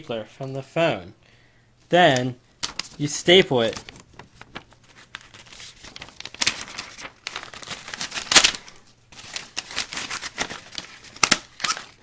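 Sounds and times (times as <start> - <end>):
paper rustling and crinkling: 2.6 - 12.0.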